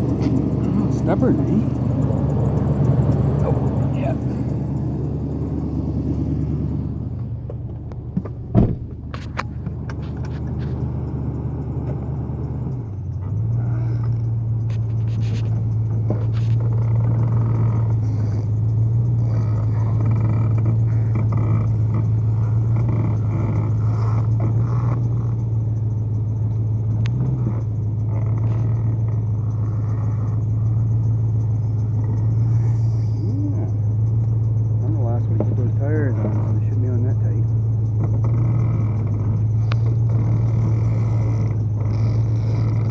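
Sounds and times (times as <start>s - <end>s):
machine humming: 0.0s - 14.7s.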